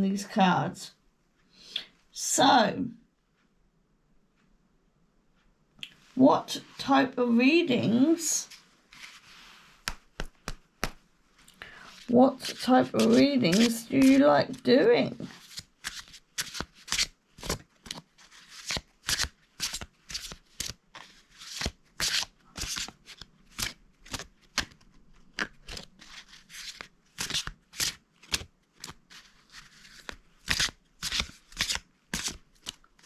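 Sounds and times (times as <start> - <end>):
cards being shuffled: 8.5 - 11.0, 11.6 - 33.0.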